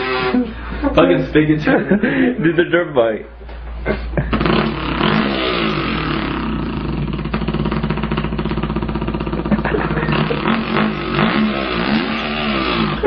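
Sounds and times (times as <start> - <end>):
man imitating dirt bike engine: 0.0 - 0.6, 3.8 - 13.0.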